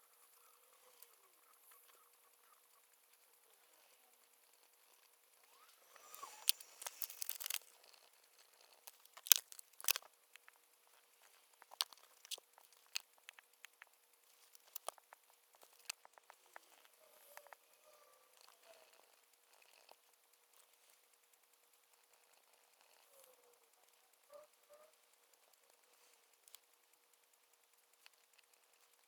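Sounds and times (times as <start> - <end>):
crinkling rustle: 5.5 - 19.0
light clicks and taps: 8.4 - 20.0.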